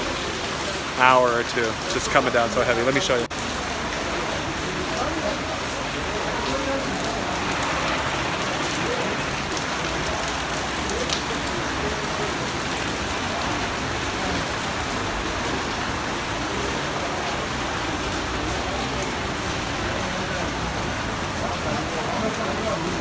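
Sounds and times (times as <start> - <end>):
heavy rain pouring: 0.0 - 23.0.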